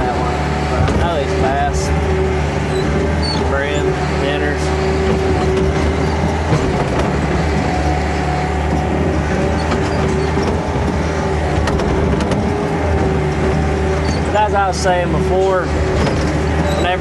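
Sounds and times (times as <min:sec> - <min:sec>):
excavator diesel engine: 0:00.0 - 0:17.0
short knocks: 0:00.8 - 0:14.4.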